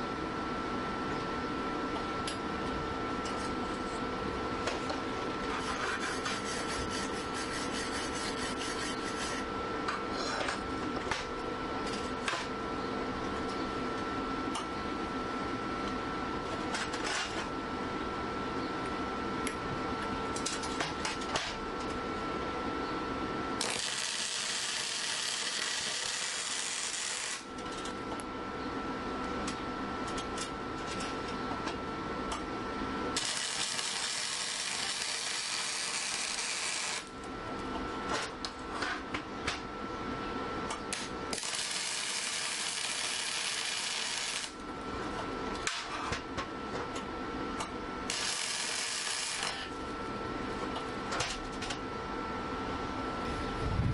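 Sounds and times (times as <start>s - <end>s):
steady welder hum: 0.0s - 53.9s
welding crackle: 23.6s - 27.5s, 33.2s - 37.1s, 40.9s - 44.6s, 48.1s - 49.7s.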